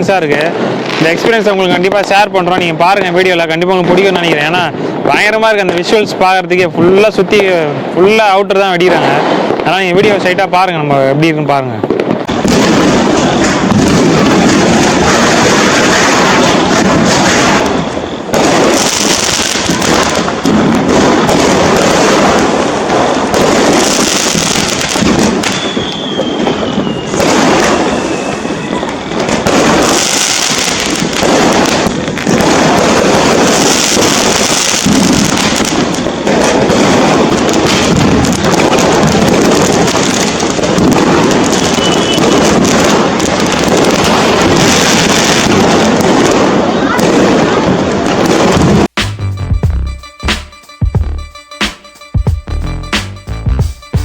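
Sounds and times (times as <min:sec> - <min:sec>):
firecrackers bursting: 0:00.0 - 0:10.9, 0:11.6 - 0:49.4
aerial firework shells bursting: 0:11.9 - 0:46.6
falling firework whistle: 0:12.3 - 0:20.2, 0:23.3 - 0:44.9.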